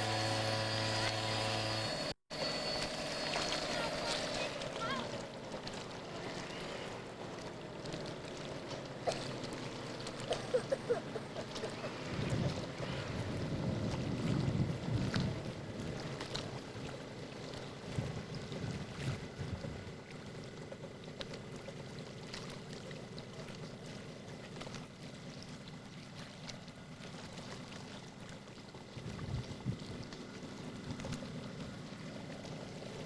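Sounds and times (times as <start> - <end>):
faint high whine: 0.0 - 5.1
choppy water: 2.3 - 33.0
wind buffeting microphone: 11.7 - 16.8, 17.8 - 20.1, 28.9 - 31.4.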